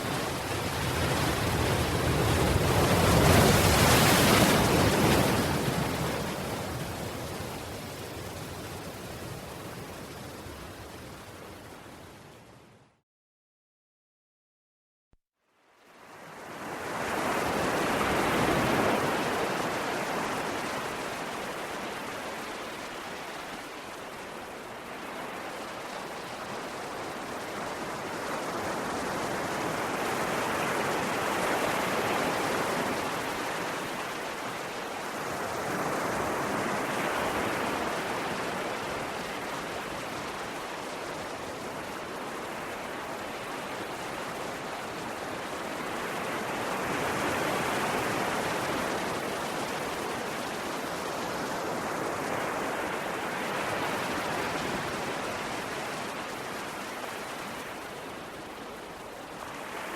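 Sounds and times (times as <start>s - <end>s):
sea waves washing on shore: 0.0s - 12.6s, 15.9s - 59.9s.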